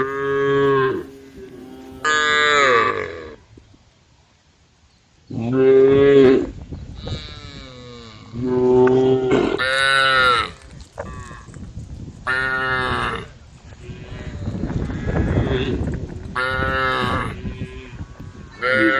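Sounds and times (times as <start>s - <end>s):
cows mooing: 0.0s - 3.4s, 13.9s - 18.9s.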